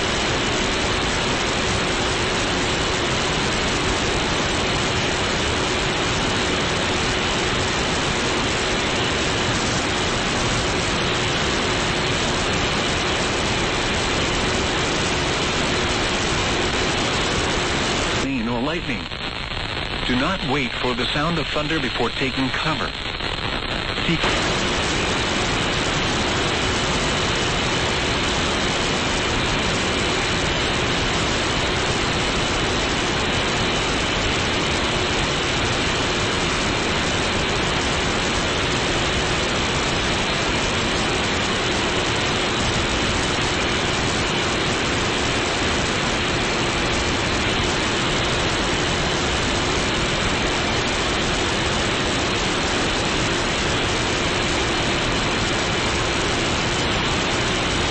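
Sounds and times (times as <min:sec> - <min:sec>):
radio static hiss: 0:00.0 - 0:57.9
faint steady tones: 0:06.6 - 0:32.7.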